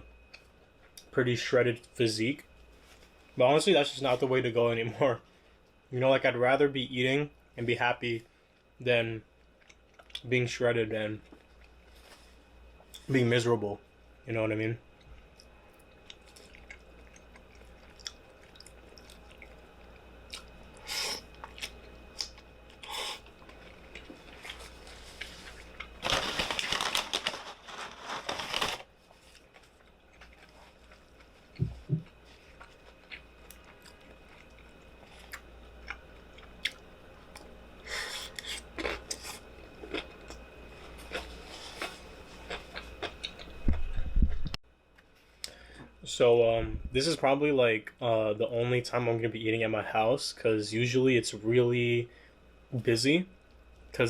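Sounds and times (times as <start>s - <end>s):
person chewing: 15.0s - 26.0s, 29.3s - 43.9s
rustling and scraping: 23.5s - 31.0s.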